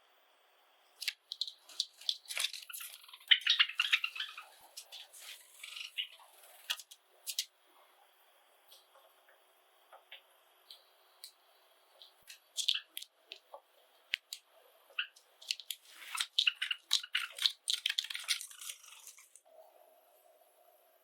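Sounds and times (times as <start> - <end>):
sparrows chirping: 1.3 - 7.4, 15.0 - 19.2.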